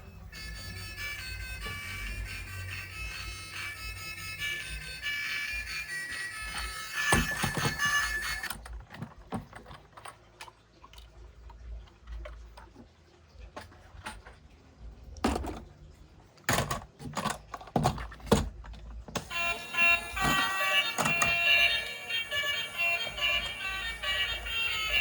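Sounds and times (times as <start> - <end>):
plastic toys clicking and knocking: 0.4 - 10.5, 16.4 - 25.0
background music: 19.2 - 25.0.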